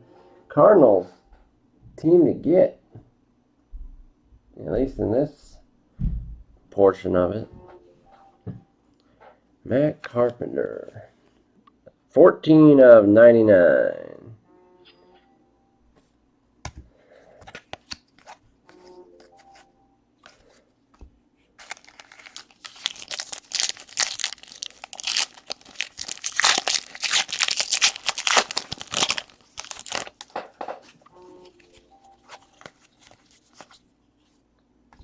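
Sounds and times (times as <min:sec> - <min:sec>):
foil wrapper tearing and crinkling: 0:21.6 - 0:30.4.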